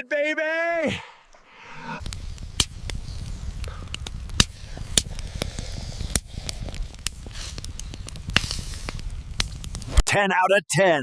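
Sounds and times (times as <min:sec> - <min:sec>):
fire crackling and popping: 0:01.2 - 0:10.1
low fire rumble: 0:01.4 - 0:10.0.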